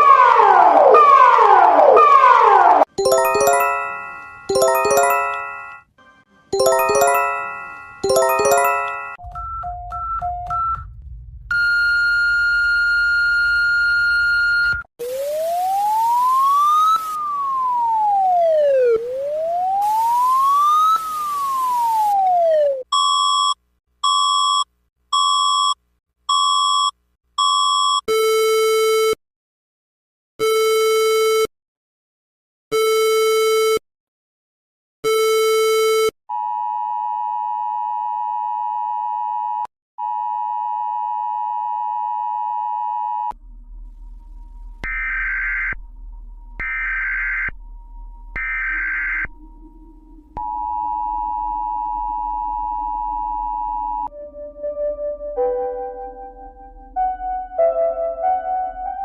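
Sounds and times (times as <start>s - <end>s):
electronic alert beeps: 3.0s - 5.8s
steady alert tone: 3.0s - 5.8s, 6.6s - 9.2s
low hum: 43.3s - 58.2s.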